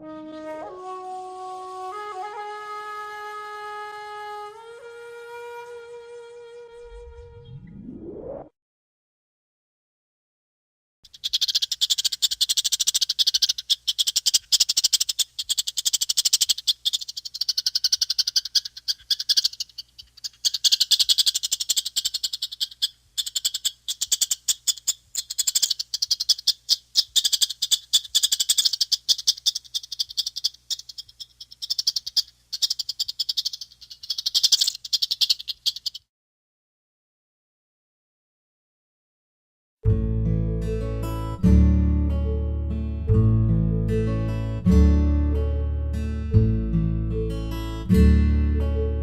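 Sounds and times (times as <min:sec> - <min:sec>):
chipmunk chattering: 0:11.1 - 0:36.1.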